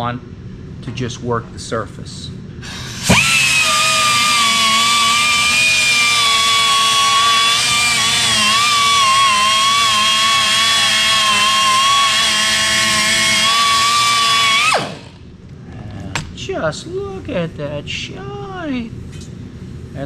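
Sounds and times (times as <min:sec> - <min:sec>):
electric buffer whining: 0:02.6 - 0:15.2.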